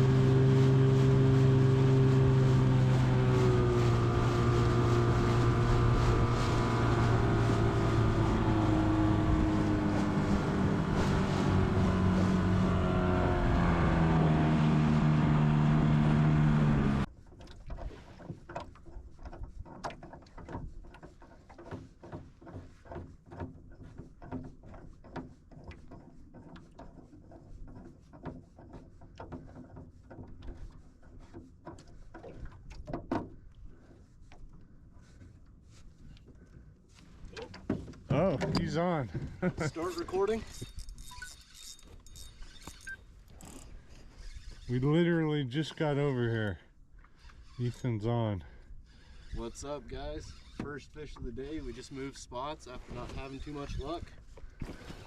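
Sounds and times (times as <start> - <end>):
boat motor running: 0.0 - 17.1, 37.2 - 41.2.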